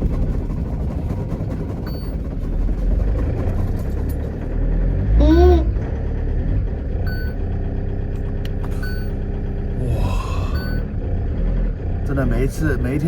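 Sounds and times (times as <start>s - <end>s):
van engine running: 0.0s - 13.0s
short high warning beeps: 7.1s - 7.4s, 8.8s - 9.2s, 10.5s - 10.9s.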